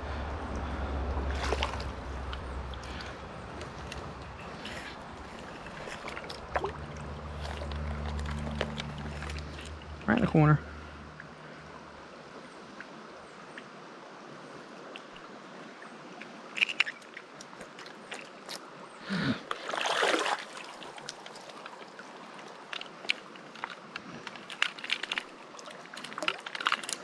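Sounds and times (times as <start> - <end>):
creek water running: 0.0 - 27.0
water splashing swish: 0.6 - 9.7, 19.5 - 22.7.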